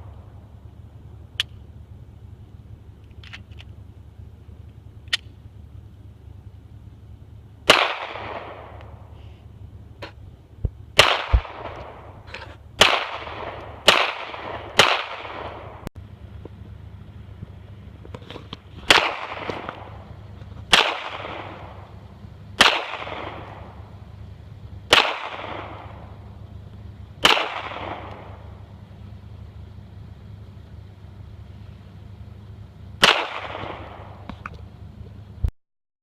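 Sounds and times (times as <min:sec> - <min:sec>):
pistol shots with echo: 0:07.6 - 0:08.8, 0:11.0 - 0:12.2, 0:12.8 - 0:15.8, 0:18.9 - 0:20.1, 0:20.7 - 0:21.9, 0:22.6 - 0:24.0, 0:24.9 - 0:26.3, 0:27.2 - 0:28.6, 0:33.0 - 0:34.3.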